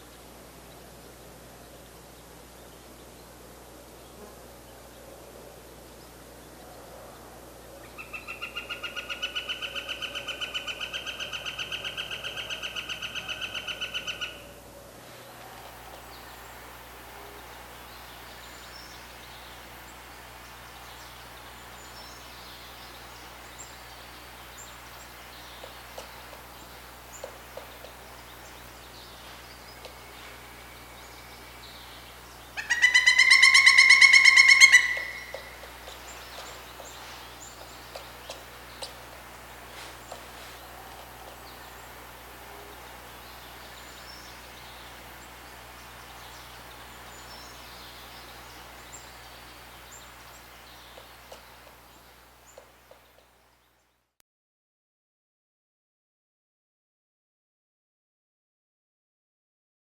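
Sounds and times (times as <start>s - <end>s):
woodpecker calling: 7.9s - 14.5s, 20.9s - 53.4s.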